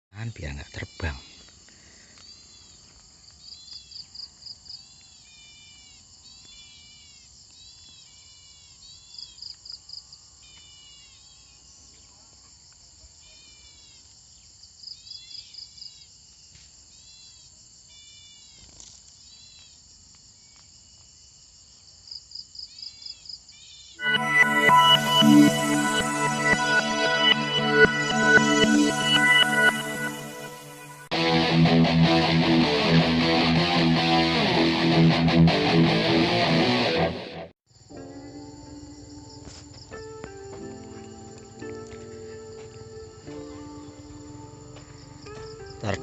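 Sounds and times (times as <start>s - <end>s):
small birds chirping: 0.2s - 9.6s
high insect drone: 0.2s - 31.4s, 37.7s - 46.0s.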